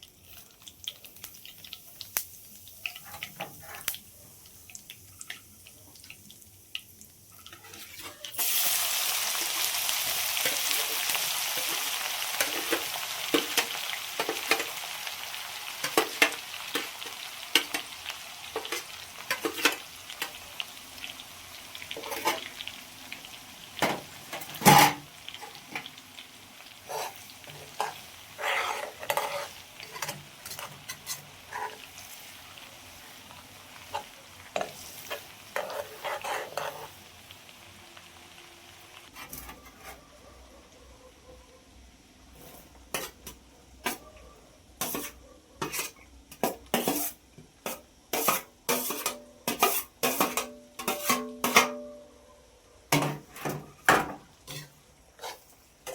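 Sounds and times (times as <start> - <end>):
food sizzling in hot oil: 0.0 - 39.6, 41.9 - 44.0, 44.6 - 52.0, 52.9 - 55.9
spatula scraping pan: 3.0 - 4.0, 7.3 - 8.4, 21.9 - 22.6, 26.8 - 32.4, 33.8 - 37.0, 39.1 - 40.1, 42.4 - 44.0, 44.8 - 51.8, 52.9 - 55.9.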